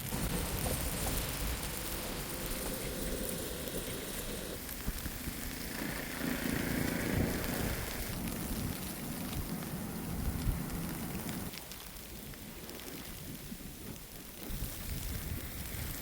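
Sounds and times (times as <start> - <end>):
low hum: 0.0 - 11.5
wind-driven snow hiss: 0.0 - 16.0.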